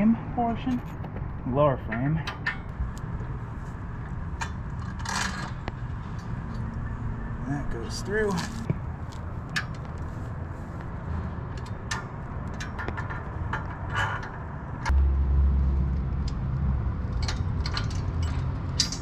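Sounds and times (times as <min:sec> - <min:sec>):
metal parts clicking and clinking: 0:04.4 - 0:06.2, 0:17.1 - 0:19.0
low rumble: 0:14.6 - 0:19.0.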